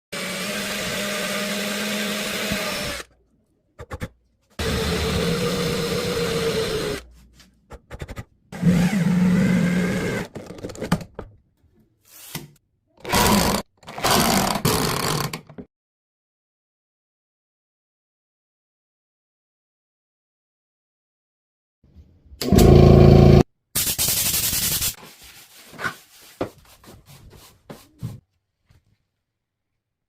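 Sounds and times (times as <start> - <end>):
electric drill motor running: 0.2 - 3.1, 4.6 - 7.0, 8.6 - 10.3.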